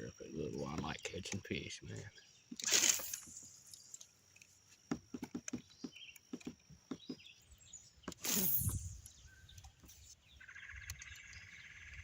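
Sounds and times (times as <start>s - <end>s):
clicks and taps of handled gear: 3.9s - 7.3s.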